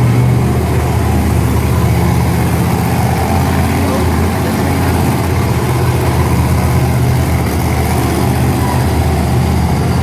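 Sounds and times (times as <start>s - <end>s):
truck engine running loudly: 0.0s - 10.0s.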